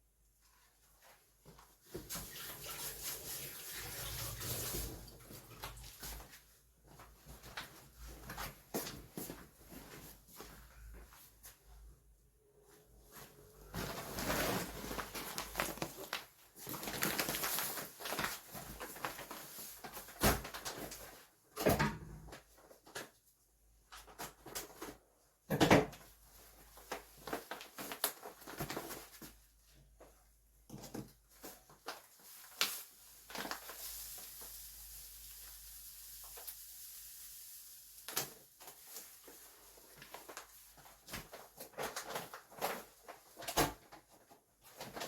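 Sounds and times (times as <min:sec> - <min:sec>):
steady hiss: 0:33.4 - 0:38.3.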